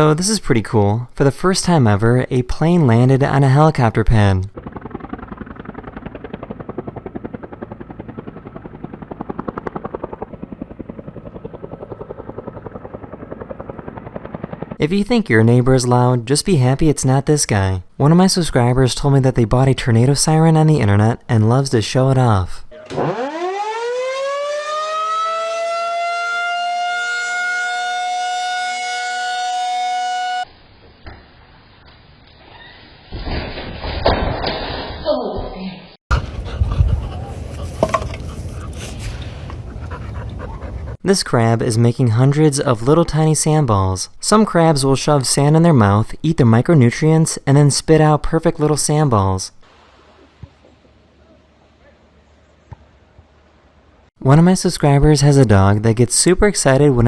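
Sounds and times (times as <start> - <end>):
aircraft engine pulsing: 3.7 - 14.9, 36.1 - 41.0
warning siren wailing: 22.7 - 30.5.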